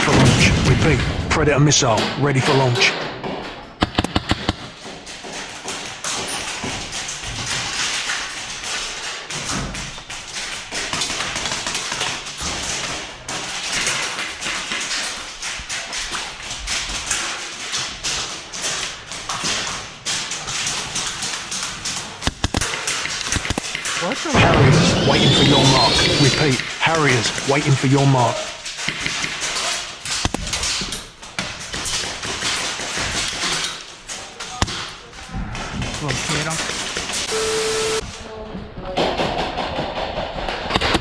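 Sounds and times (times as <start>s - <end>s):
bb impacts tapping: 3.2s - 24.3s, 26.4s - 37.3s
airsoft gunfire: 3.8s - 4.8s, 18.1s - 33.7s, 34.6s - 35.0s.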